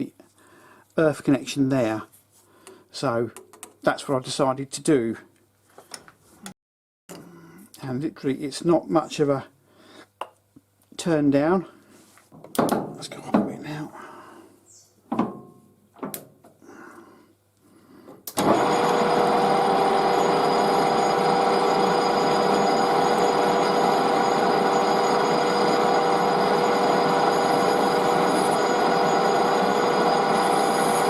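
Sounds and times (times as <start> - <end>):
lathe humming: 18.4 - 31.0.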